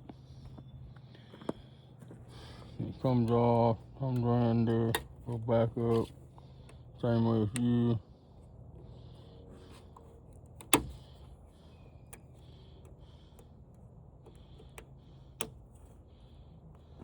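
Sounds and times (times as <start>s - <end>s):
soft handling noise: 0.0s - 17.0s.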